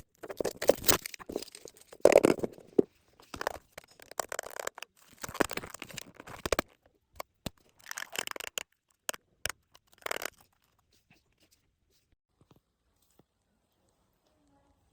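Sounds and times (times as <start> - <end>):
packaging crinkling and tearing: 0.0 - 6.7, 7.7 - 10.6.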